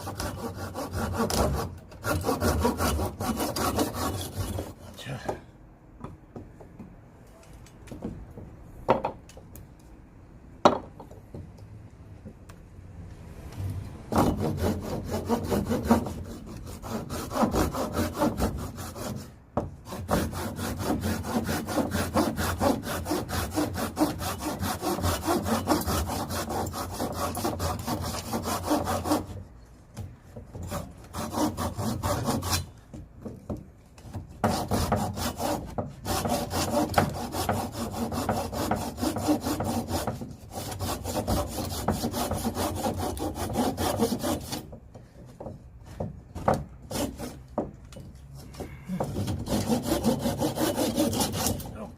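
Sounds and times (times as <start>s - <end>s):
hand saw cutting wood: 0.0s - 5.1s, 14.1s - 29.4s, 30.5s - 32.8s, 34.1s - 44.8s, 45.9s - 51.9s.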